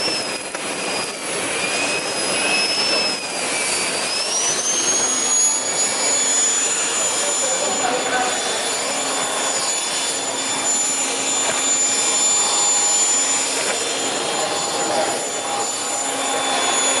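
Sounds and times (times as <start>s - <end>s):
vacuum cleaner running: 0.0s - 17.0s.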